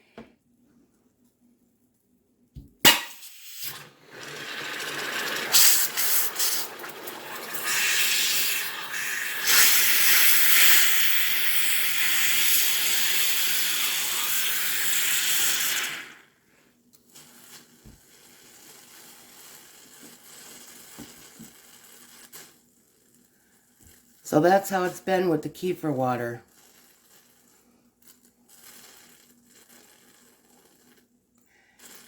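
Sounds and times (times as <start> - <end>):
bottle cap pop: 2.6 - 3.4
fizzing gas hiss: 2.8 - 16.3, 24.3 - 26.3.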